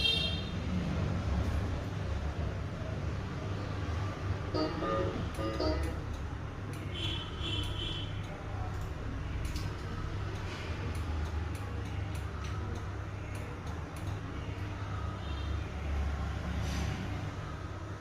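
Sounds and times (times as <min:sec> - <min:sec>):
low steady hum: 0:04.1 - 0:07.0
light irregular clicks: 0:07.6 - 0:14.8.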